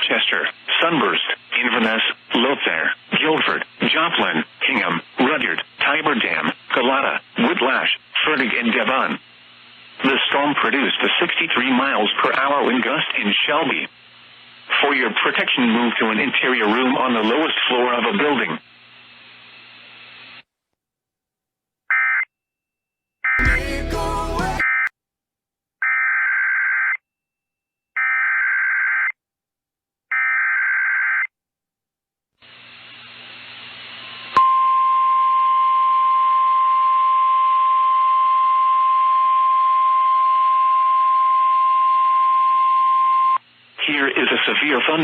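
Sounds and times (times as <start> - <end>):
crackling static: 0.0 - 20.5, 43.4 - 45.0.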